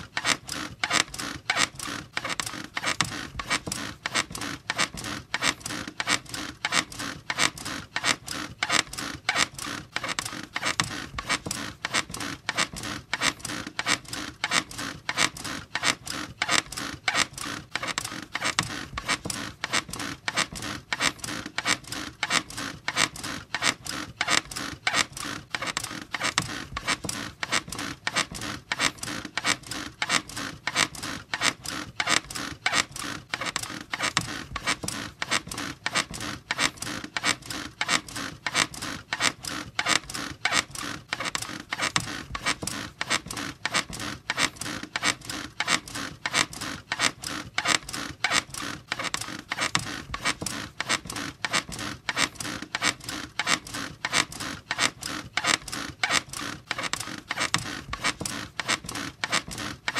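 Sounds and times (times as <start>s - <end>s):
bed squeaking rhythmically: 0.0s - 59.9s.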